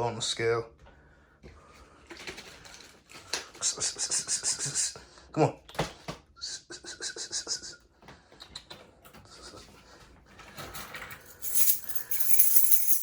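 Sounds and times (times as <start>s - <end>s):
metallic jingling: 11.2s - 13.0s.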